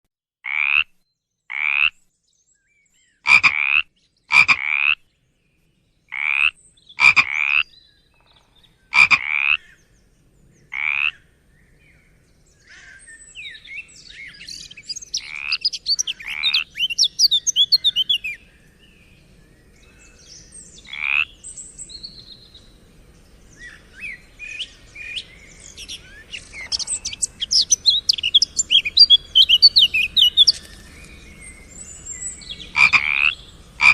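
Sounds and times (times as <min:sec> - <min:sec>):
frogs croaking: 0:00.4 - 0:02.0, 0:03.2 - 0:05.1, 0:06.1 - 0:09.8, 0:10.7 - 0:11.3, 0:14.6 - 0:18.3, 0:20.8 - 0:21.4, 0:25.8 - 0:30.8, 0:31.7 - 0:33.9
frog chorus chirping: 0:01.5 - 0:02.0, 0:03.3 - 0:05.0, 0:06.1 - 0:08.3, 0:08.9 - 0:09.7, 0:10.7 - 0:11.2, 0:14.6 - 0:18.3, 0:20.8 - 0:21.4, 0:25.8 - 0:30.8, 0:31.8 - 0:33.9.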